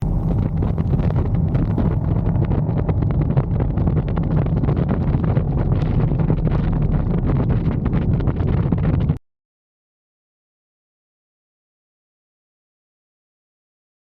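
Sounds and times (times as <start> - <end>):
wind buffeting microphone: 0.0 - 9.2.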